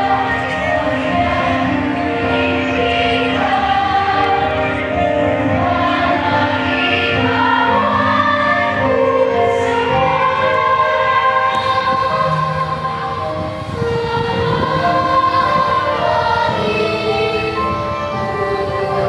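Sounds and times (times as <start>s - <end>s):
choir singing: 0.0s - 19.0s.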